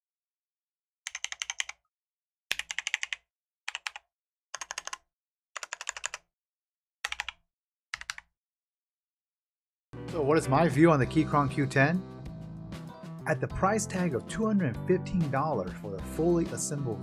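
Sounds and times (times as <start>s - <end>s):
mechanical keyboard typing: 1.1s - 1.8s, 2.5s - 4.0s, 4.6s - 5.0s, 5.6s - 6.2s, 7.1s - 7.4s, 8.0s - 8.3s.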